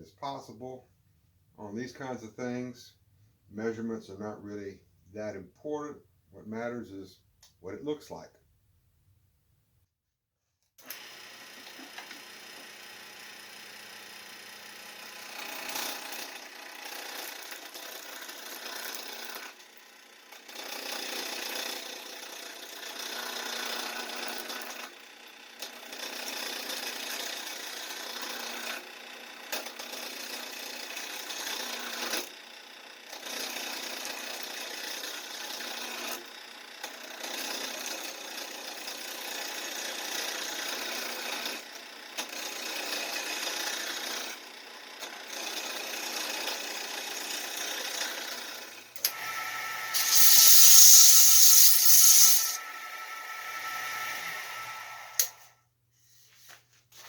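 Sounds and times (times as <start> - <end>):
lathe tool scraping wood: 49.1 - 55.4.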